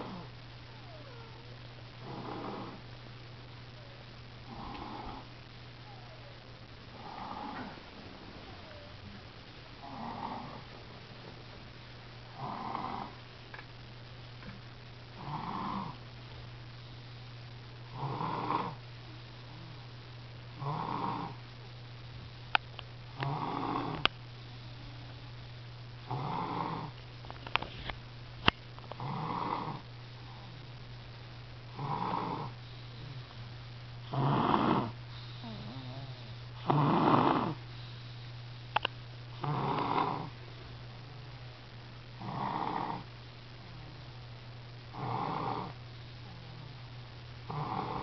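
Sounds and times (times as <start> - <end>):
person snoring: 0.0 - 0.3, 2.0 - 2.8, 4.5 - 6.2, 6.9 - 7.8, 9.8 - 10.7, 12.3 - 13.2, 15.2 - 16.0, 17.9 - 18.8, 20.6 - 21.4, 23.2 - 24.1, 26.1 - 27.0, 29.0 - 30.6, 31.7 - 33.4, 34.0 - 38.1, 39.4 - 40.3, 42.2 - 43.1, 44.9 - 46.7, 47.5 - 48.0
steady low hum: 0.0 - 48.0.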